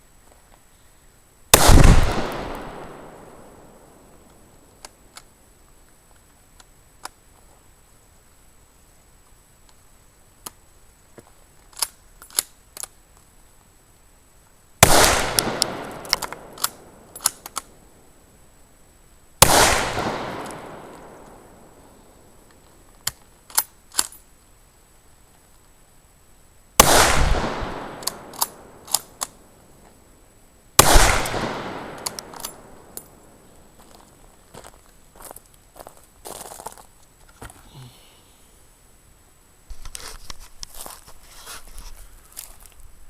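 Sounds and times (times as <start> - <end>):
rifle shots echoing: 1.5 - 4.3, 14.8 - 17.8, 19.4 - 21.9, 26.8 - 29.5, 30.8 - 33.5.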